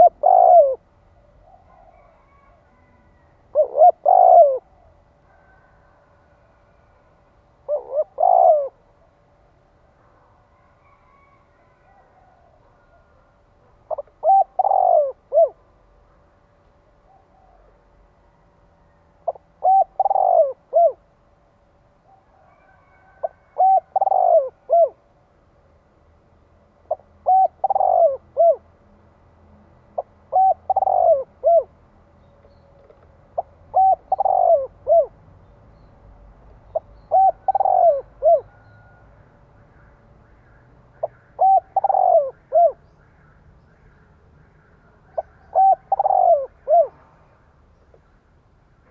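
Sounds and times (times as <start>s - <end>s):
dove cooing: 0.0s - 9.4s, 10.6s - 15.8s, 17.0s - 21.1s, 22.1s - 25.1s, 26.8s - 28.8s, 30.0s - 31.8s, 32.8s - 35.2s, 36.7s - 39.0s, 39.8s - 42.9s, 44.5s - 48.1s.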